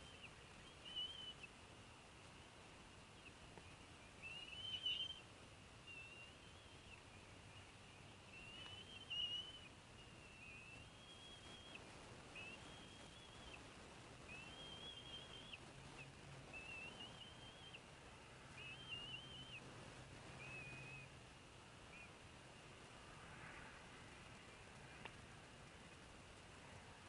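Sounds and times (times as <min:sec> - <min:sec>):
small bird calling: 0:00.0 - 0:01.6, 0:03.1 - 0:21.2, 0:21.9 - 0:22.2
low steady hum: 0:00.0 - 0:27.0.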